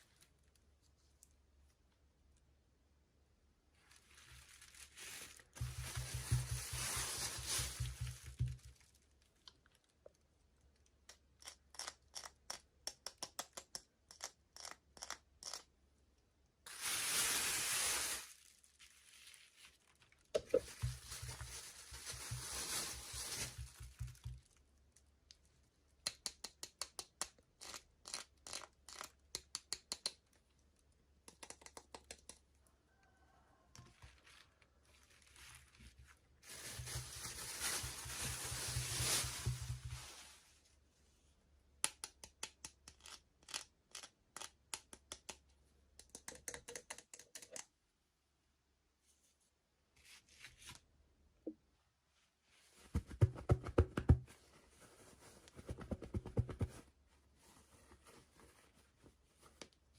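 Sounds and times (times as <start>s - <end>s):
plastic tearing and crinkling: 3.8s - 9.3s, 16.7s - 24.6s, 33.9s - 40.4s.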